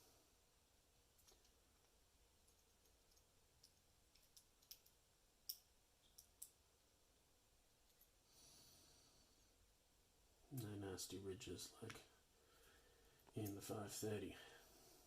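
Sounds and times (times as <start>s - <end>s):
small clicks of lock parts: 2.5s - 6.6s.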